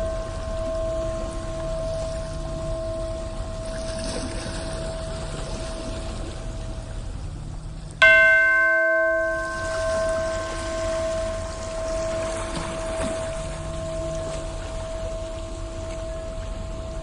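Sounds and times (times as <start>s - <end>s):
bell struck and ringing: 0.0s - 3.8s, 8.0s - 17.0s
faint held ringing tone: 0.0s - 17.0s
ocean waves: 0.0s - 17.0s.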